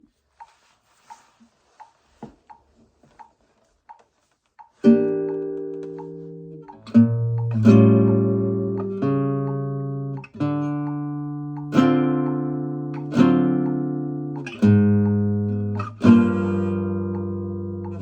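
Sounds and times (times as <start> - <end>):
faint taps and string ticks: 0.0 - 18.0
nylon guitar chords strummed: 4.8 - 18.0.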